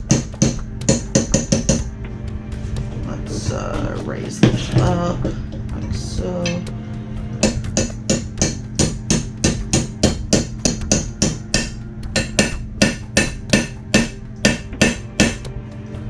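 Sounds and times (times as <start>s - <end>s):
hammer tapping a pin punch: 0.0s - 1.9s, 7.4s - 15.5s.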